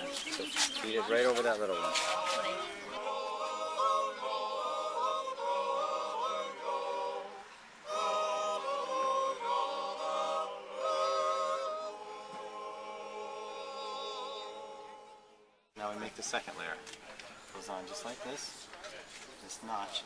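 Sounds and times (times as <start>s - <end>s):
choir singing a cappella: 0.0s - 15.7s.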